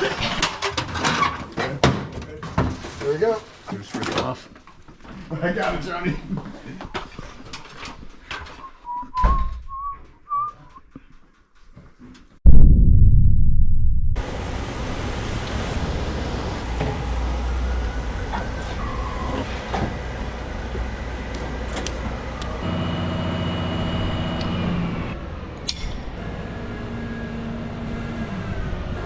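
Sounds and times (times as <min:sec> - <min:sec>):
loud low rumble: 0:12.4 - 0:15.8
deeper engine tone: 0:12.4 - 0:16.4, 0:22.4 - 0:25.2.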